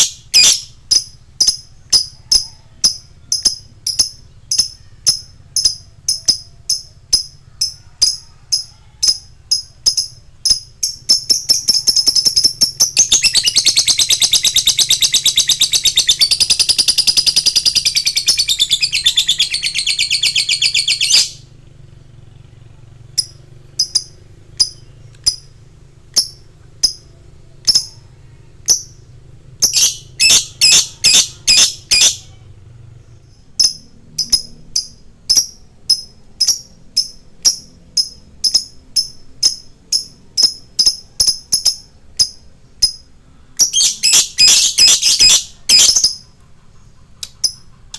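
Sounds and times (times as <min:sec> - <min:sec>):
lovebird chirping and trilling: 0:00.0 - 0:21.5, 0:23.1 - 0:47.9.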